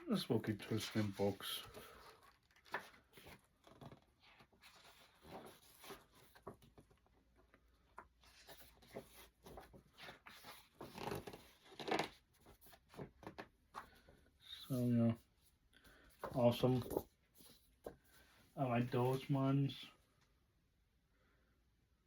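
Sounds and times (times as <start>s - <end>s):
packaging and paper rustling: 0.5s - 7.1s.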